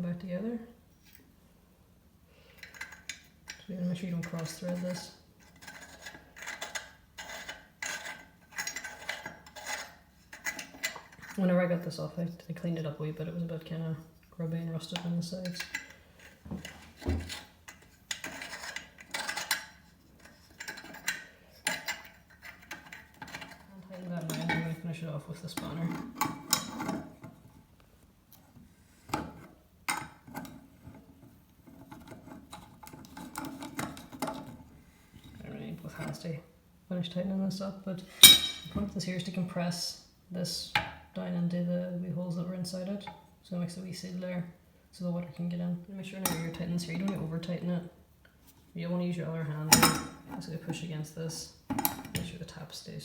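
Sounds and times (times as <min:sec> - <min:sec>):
metal nut scraping on threads: 0:02.6 - 0:12.0, 0:14.9 - 0:24.8.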